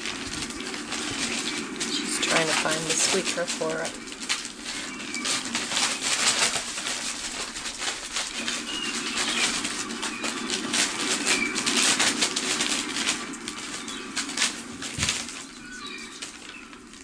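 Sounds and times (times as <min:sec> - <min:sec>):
pigeon wings flapping: 0:00.0 - 0:17.0.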